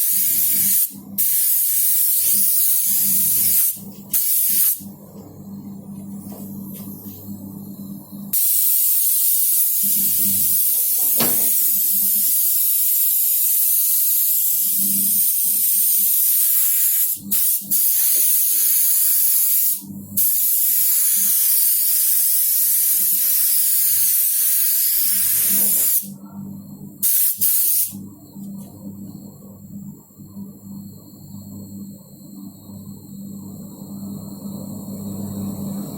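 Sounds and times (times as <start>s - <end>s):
paint spray hissing: 0.0s - 4.8s, 15.2s - 26.1s, 27.0s - 28.0s.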